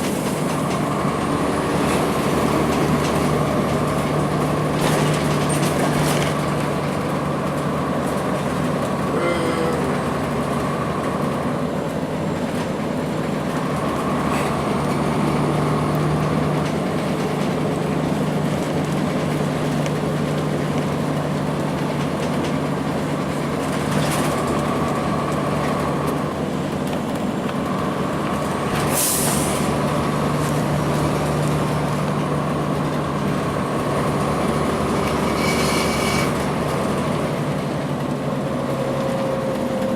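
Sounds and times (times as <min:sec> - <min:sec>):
bus diesel engine drone: 0:00.0 - 0:39.9
road noise: 0:00.0 - 0:39.9
air brake hisses: 0:28.9 - 0:29.7.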